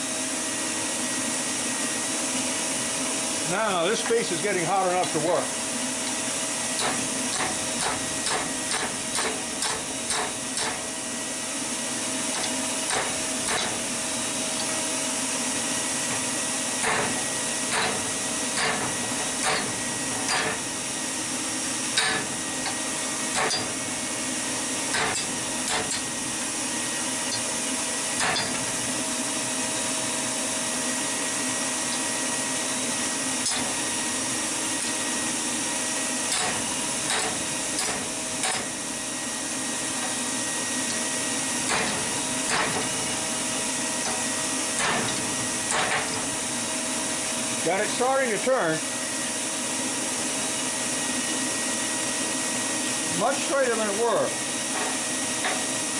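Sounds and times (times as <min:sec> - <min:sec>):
forge hissing: 0:00.0 - 0:55.9
hammer blows on hot steel: 0:06.1 - 0:11.0, 0:12.2 - 0:20.9, 0:21.8 - 0:29.1.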